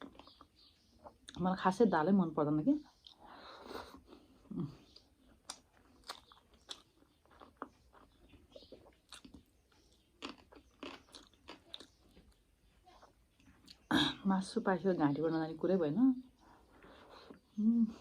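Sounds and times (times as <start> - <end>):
person chewing food: 0.0 - 1.4, 2.9 - 13.9.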